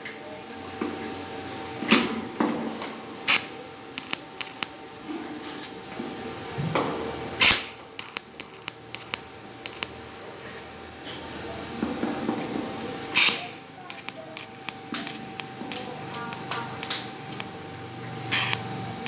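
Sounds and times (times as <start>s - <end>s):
welder snapping: 3.2s - 4.7s, 7.4s - 10.0s, 13.1s - 18.7s.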